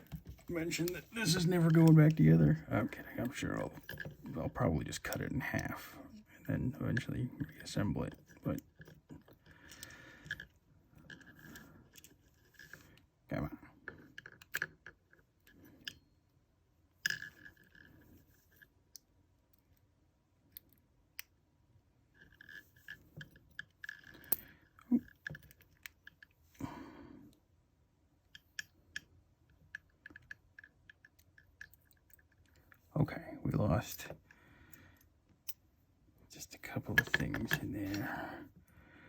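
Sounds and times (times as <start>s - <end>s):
small metal clicks: 28.3s - 32.8s.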